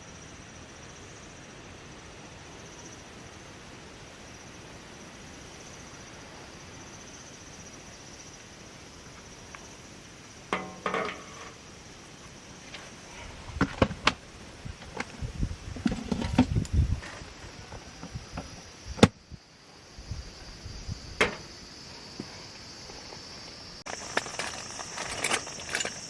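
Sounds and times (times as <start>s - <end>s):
camping gear knocking and thumping: 10.6s - 11.6s, 13.5s - 14.2s, 14.8s - 17.3s, 21.2s - 21.5s, 23.9s - 26.0s
short pitched clank: 10.6s - 11.6s
high insect buzz: 16.5s - 26.0s.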